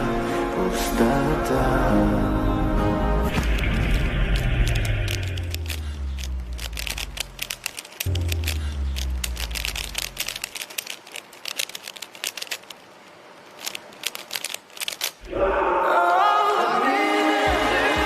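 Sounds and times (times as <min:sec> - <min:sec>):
puzzle cube clicking: 0:03.3 - 0:15.3.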